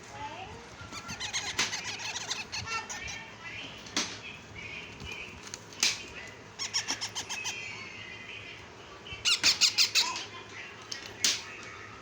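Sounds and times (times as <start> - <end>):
parakeet chicks calling: 0.8 - 3.6, 6.4 - 8.4, 9.2 - 10.3.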